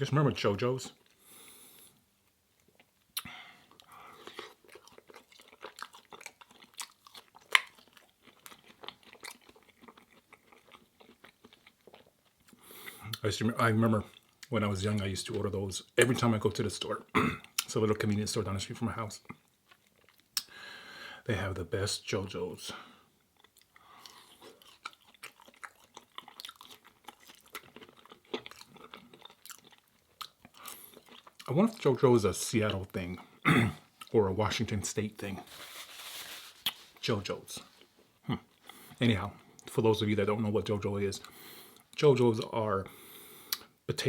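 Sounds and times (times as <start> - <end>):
chewing with wet mouth clicks: 2.2 - 13.2, 23.4 - 31.9.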